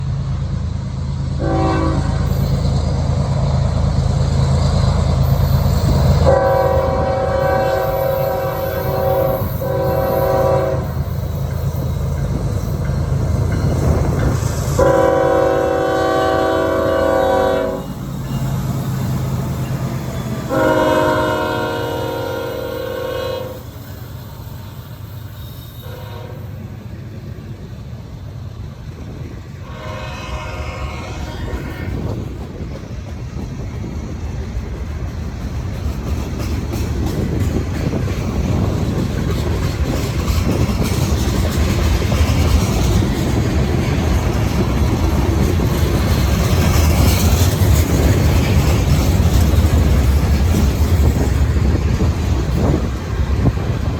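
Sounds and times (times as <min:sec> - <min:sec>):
locomotive horn blasts: 0:01.4 - 0:02.5, 0:06.2 - 0:11.0, 0:14.8 - 0:18.0, 0:20.5 - 0:23.7, 0:25.8 - 0:26.5, 0:29.6 - 0:32.1.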